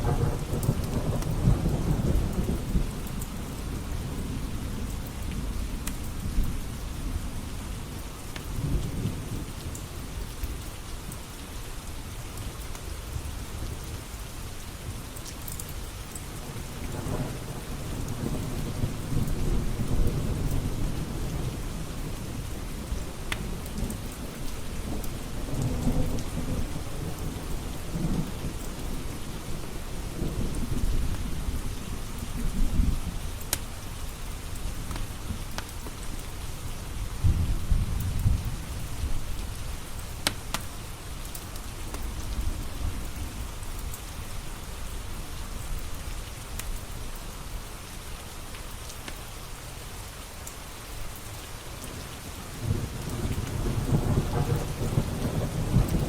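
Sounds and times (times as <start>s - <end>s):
steady rain: 0.0s - 56.0s
thunder rolling: 52.6s - 56.0s.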